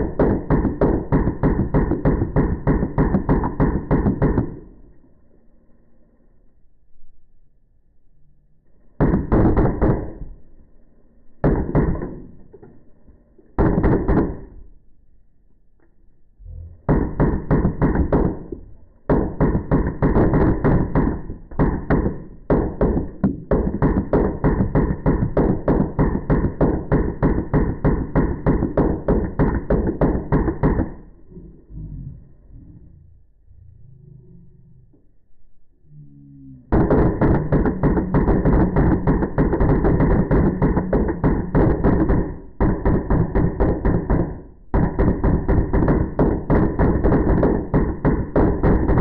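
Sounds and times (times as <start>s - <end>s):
electronic bb gun firing bursts: 0.0s - 4.8s, 9.0s - 10.4s, 11.4s - 12.3s, 13.6s - 14.6s, 16.9s - 31.1s, 36.7s - 49.0s.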